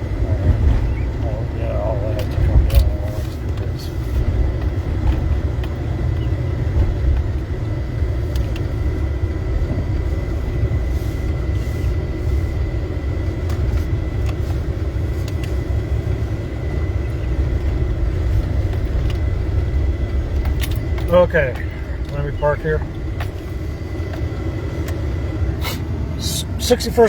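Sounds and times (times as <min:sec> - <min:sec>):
faint steady whine: 0:00.0 - 0:27.0
road and engine rumble: 0:00.0 - 0:27.0.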